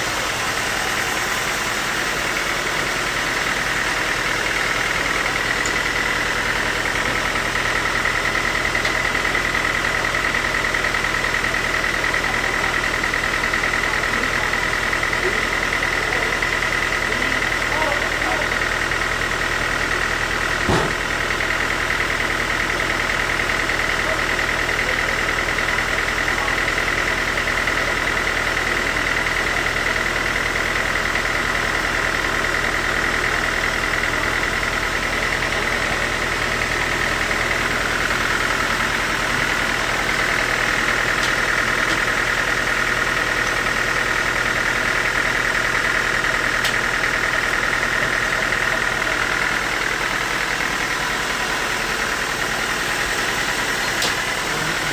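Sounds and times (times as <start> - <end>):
sawmill machinery whine and hum: 0.0 - 54.9
brief knock: 20.6 - 21.0.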